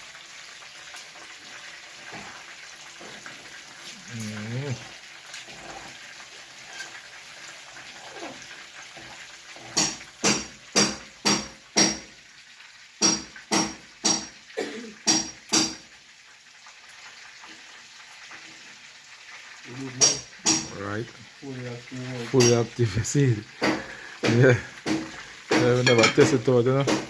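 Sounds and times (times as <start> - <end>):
chicken frying sizzle: 0.0 - 27.0
metallic knocks on pot: 9.6 - 12.1, 13.0 - 14.4, 15.0 - 15.8, 20.0 - 20.7, 23.6 - 27.0.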